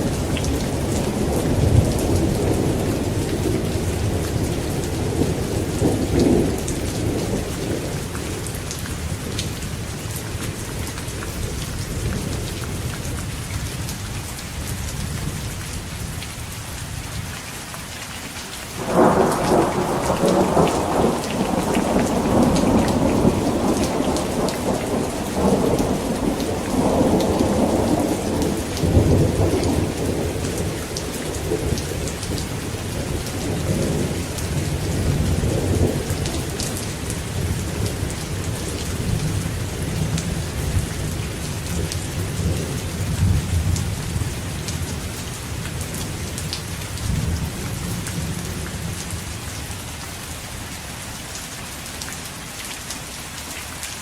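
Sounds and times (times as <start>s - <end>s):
thunder rumbling: 0.0s - 8.5s, 18.8s - 45.0s
steady rain: 0.0s - 54.0s.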